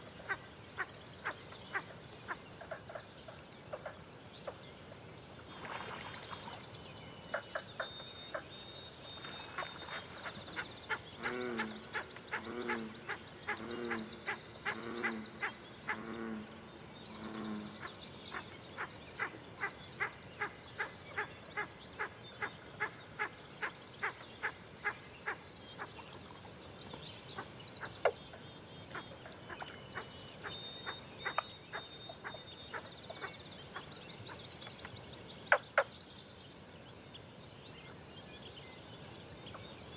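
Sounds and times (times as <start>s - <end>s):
birds chattering song: 5.7s - 26.2s, 26.9s - 36.0s
sharp ticking bird calls: 30.8s - 33.8s.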